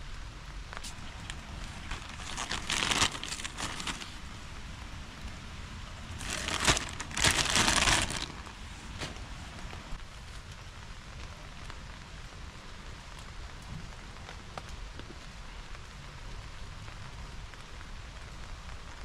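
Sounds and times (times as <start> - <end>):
rain pattering on a tarp: 0.0 - 19.0
tarp crinkling and rustling: 0.7 - 10.5.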